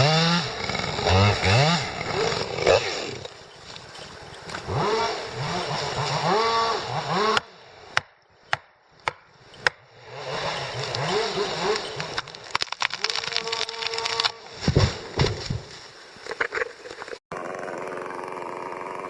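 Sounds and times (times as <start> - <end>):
chainsaw engine revving: 0.0 - 7.6, 10.0 - 14.4, 17.3 - 19.0.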